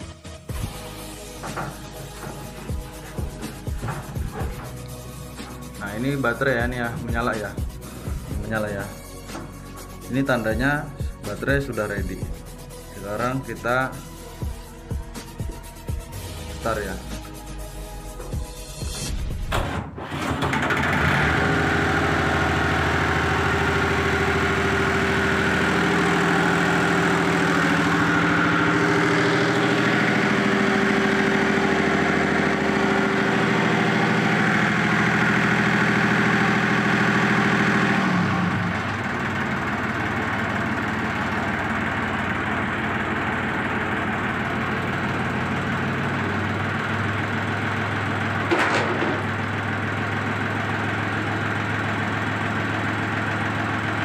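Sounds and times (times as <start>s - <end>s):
marine diesel engine idling: 20.2s - 54.0s.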